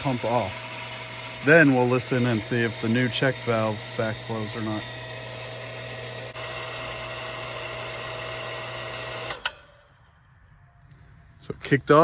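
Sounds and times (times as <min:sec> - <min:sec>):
water pump motor humming: 0:00.0 - 0:10.1.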